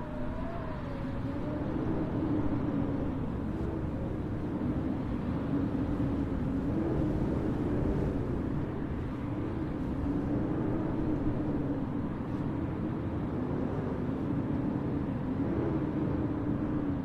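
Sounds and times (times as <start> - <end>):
wavering hum: 0.0 - 11.7
low street rumble: 0.0 - 17.0.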